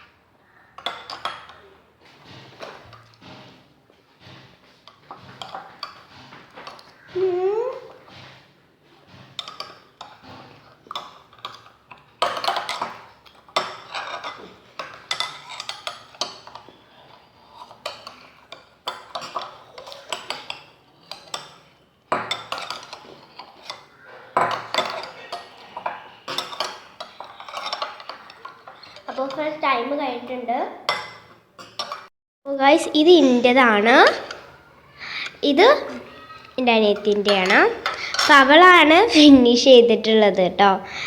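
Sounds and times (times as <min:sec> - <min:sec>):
spoons scraping ice cream containers: 0:00.6 - 0:41.0.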